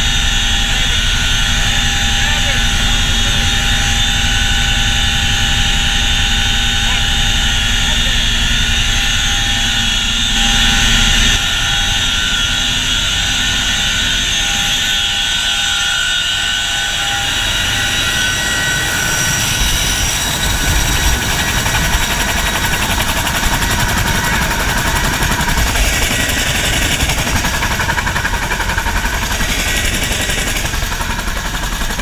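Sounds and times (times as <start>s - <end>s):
helicopter low rumble: 0.0s - 32.0s
helicopter turbine whine: 0.0s - 32.0s
fast rotor beat: 17.2s - 32.0s.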